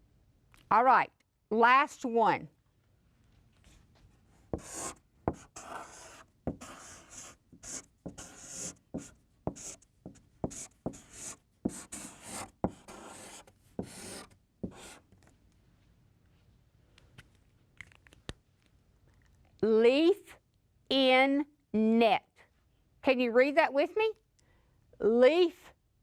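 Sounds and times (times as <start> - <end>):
chalk scratching on a board: 4.6 - 15.0.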